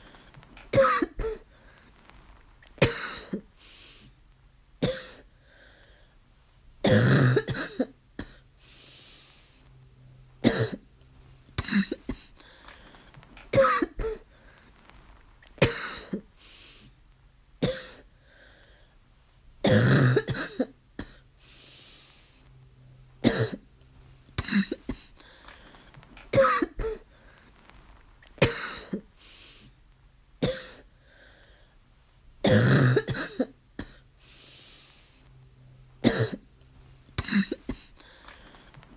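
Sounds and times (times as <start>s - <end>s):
faint drawn breaths: 0.0s - 0.6s, 1.2s - 2.5s, 3.5s - 4.2s, 5.2s - 6.7s, 8.4s - 9.9s, 11.1s - 13.4s, 14.0s - 15.3s, 16.3s - 17.0s, 18.0s - 19.5s, 21.2s - 22.7s, 23.9s - 26.3s, 27.0s - 28.2s, 29.1s - 29.8s, 30.8s - 32.3s, 34.0s - 35.5s, 36.6s - 38.9s
harsh barking coughing: 0.7s - 1.4s, 2.8s - 3.5s, 4.8s - 5.3s, 6.9s - 8.4s, 10.4s - 10.8s, 11.6s - 12.3s, 13.5s - 14.2s, 15.6s - 16.3s, 17.6s - 18.0s, 19.7s - 21.2s, 23.2s - 23.6s, 24.4s - 25.1s, 26.3s - 27.0s, 28.4s - 29.1s, 30.4s - 30.9s, 32.5s - 34.0s, 36.0s - 36.4s, 37.2s - 37.9s.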